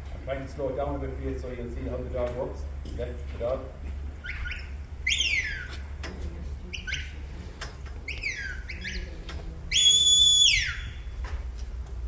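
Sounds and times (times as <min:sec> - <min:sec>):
shepherd whistling commands: 0:09.7 - 0:11.0.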